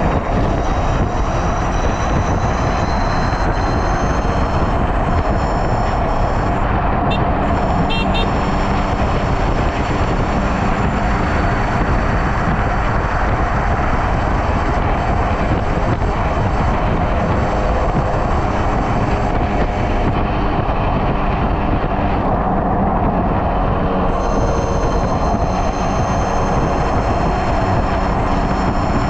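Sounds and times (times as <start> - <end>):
wind and road noise: 0.0 - 29.0
faint high whine: 24.1 - 29.0.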